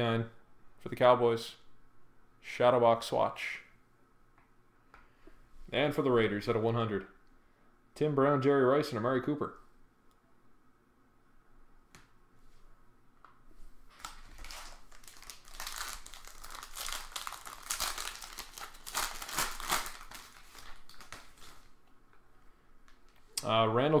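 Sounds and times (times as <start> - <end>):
plastic packaging crinkling and tearing: 13.9 - 21.8.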